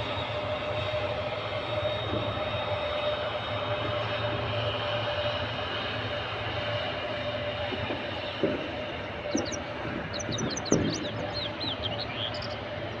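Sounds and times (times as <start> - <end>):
aircraft drone: 0.0 - 13.0
birds chirping: 9.2 - 12.8.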